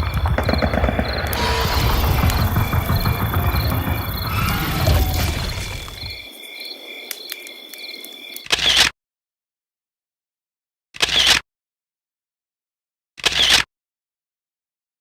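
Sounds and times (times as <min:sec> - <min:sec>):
loud low rumble: 0:00.0 - 0:06.2
short loud noise: 0:00.0 - 0:06.2
night insects chirping: 0:00.0 - 0:08.8.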